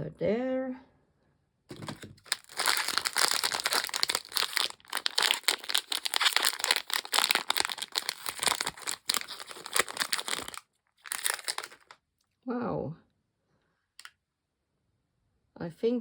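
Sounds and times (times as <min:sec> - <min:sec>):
plastic packet crinkling: 0:01.7 - 0:12.0.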